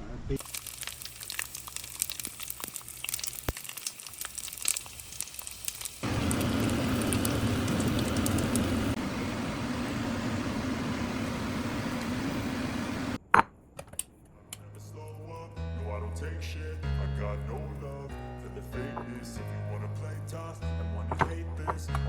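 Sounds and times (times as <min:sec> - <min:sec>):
fish frying in oil: 0:00.4 - 0:13.2
low hum: 0:06.0 - 0:13.2.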